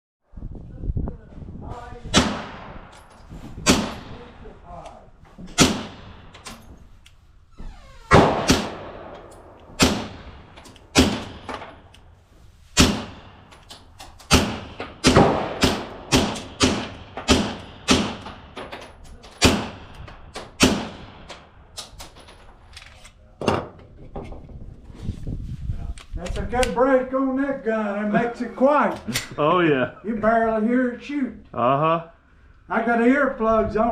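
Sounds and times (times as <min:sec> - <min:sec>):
suppressed pistol shots: 0:02.2 - 0:04.2, 0:05.6 - 0:06.6, 0:08.1 - 0:12.0, 0:12.8 - 0:13.6, 0:14.2 - 0:18.6, 0:19.4 - 0:21.9.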